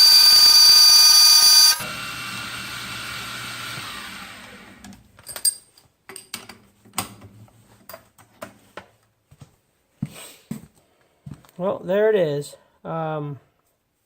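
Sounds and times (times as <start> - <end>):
milling machine spindle winding down: 0.0 - 5.0.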